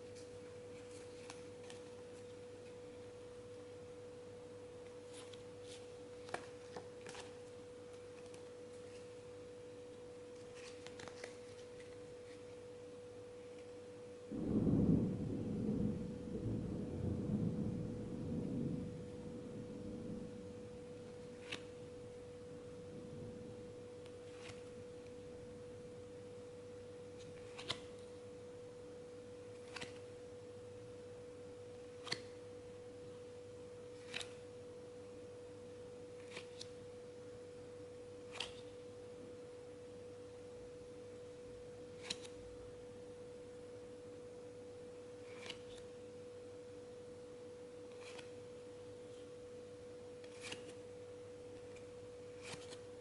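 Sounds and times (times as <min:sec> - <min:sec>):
faint steady tone: 0:12.7 - 0:21.1.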